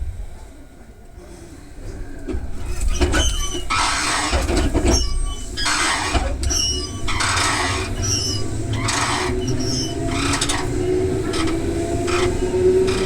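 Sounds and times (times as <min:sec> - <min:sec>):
train interior rumble: 0:00.0 - 0:13.0
hissy bursts with squealing: 0:02.6 - 0:13.0.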